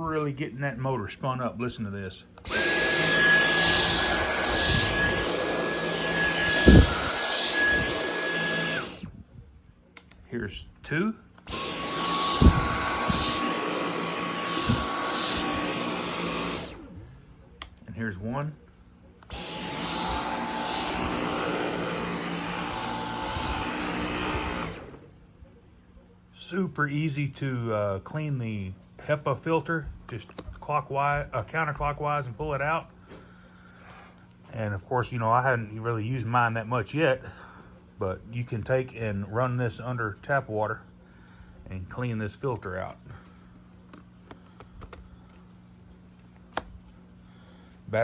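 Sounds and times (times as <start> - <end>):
vacuum cleaner motor whining: 2.4 - 9.2, 11.4 - 17.3, 19.2 - 25.1.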